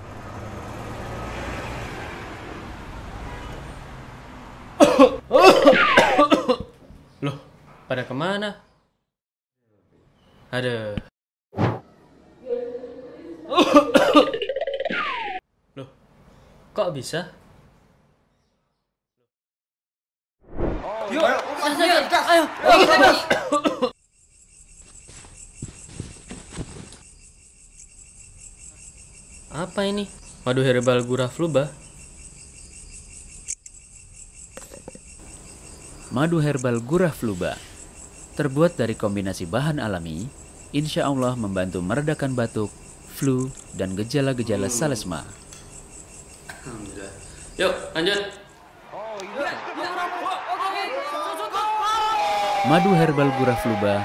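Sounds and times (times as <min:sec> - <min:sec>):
traffic noise with low hum: 0:00.0 - 0:08.2, 0:21.3 - 0:49.6
person coughing hard: 0:04.8 - 0:07.4, 0:13.5 - 0:14.4, 0:22.9 - 0:23.9
crickets chirping: 0:21.6 - 0:50.0.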